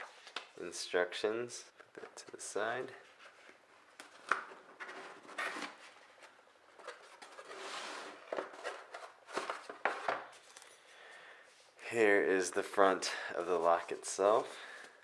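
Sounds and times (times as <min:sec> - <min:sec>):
packaging rustling slide: 0:04.8 - 0:10.8.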